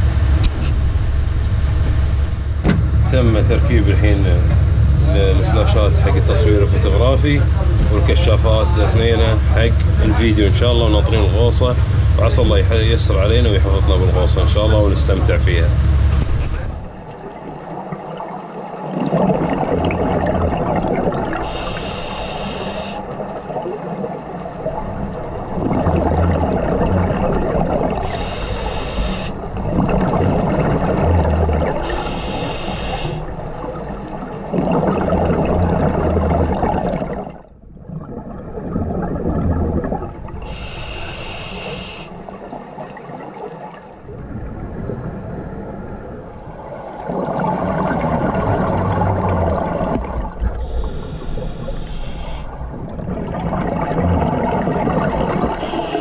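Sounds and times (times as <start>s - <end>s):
bubbling exhalations: 16.4s - 56.0s
regulator inhalation hiss: 21.4s - 23.1s, 28.0s - 29.4s, 31.8s - 33.3s, 40.4s - 42.2s, 44.8s - 45.9s, 50.6s - 52.6s, 55.6s - 56.0s.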